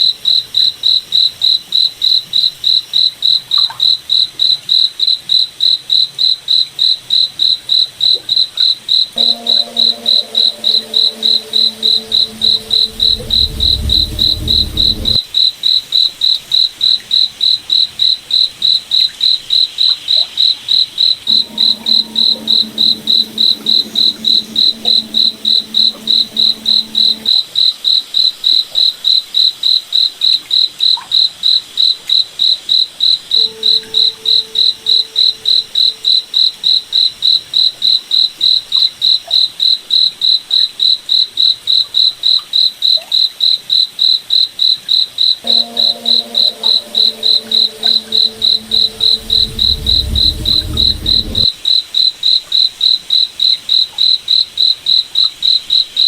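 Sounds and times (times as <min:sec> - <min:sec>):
faint low hum: 0:09.2 - 0:15.2, 0:45.4 - 0:51.5
low rumble: 0:09.2 - 0:15.2, 0:21.3 - 0:27.3, 0:45.5 - 0:51.5
cricket chirping: 0:45.2 - 0:51.5.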